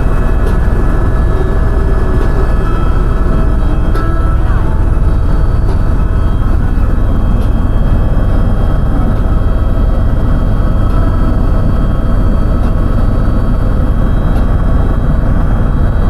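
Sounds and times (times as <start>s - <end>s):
helicopter engine and rotor drone: 0.0s - 16.0s.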